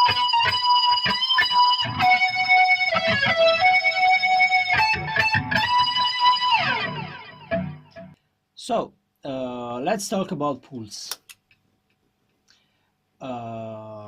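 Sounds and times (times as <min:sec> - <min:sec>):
distorted electric guitar lead: 0:00.0 - 0:08.2.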